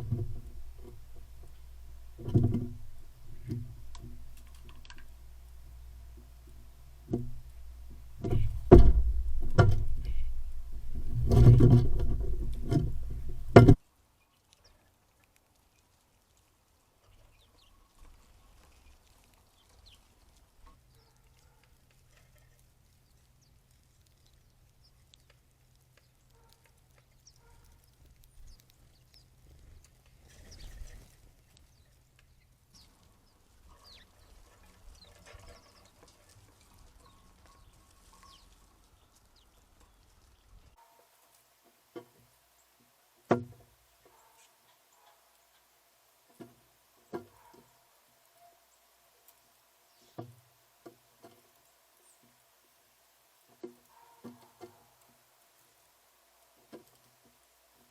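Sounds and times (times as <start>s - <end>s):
low hum: 0.0s - 13.8s.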